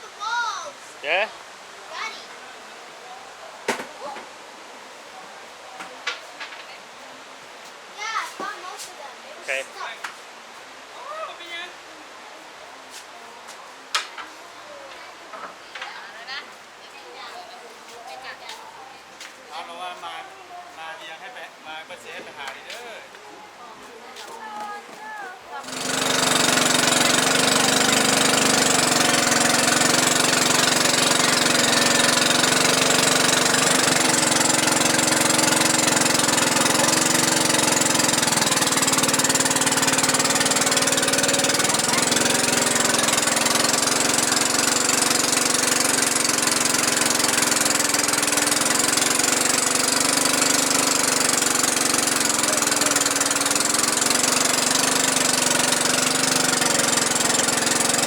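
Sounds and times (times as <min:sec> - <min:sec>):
engine running: 0:25.5 - 0:58.0.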